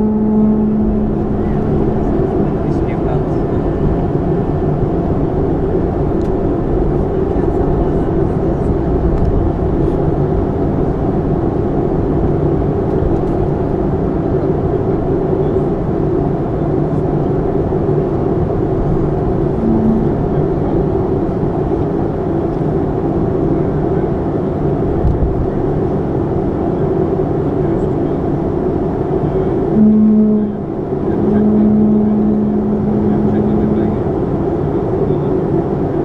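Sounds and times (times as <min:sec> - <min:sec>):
brief low tone: 0:00.0 - 0:02.2, 0:19.6 - 0:20.9, 0:29.7 - 0:34.0
jet engine cabin rumble: 0:00.0 - 0:36.0.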